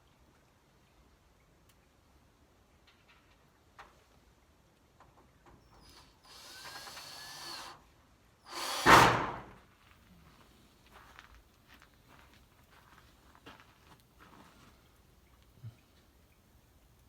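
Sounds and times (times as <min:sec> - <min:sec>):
power drill running: 0:05.8 - 0:07.8, 0:08.5 - 0:09.5.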